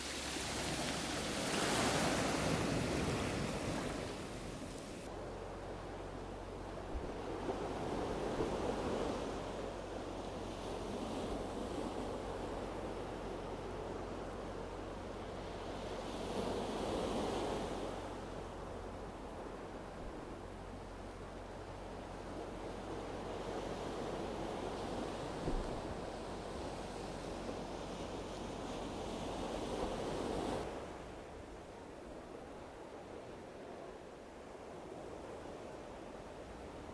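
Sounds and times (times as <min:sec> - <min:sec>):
sea waves washing onto shore: 0:00.0 - 0:05.1.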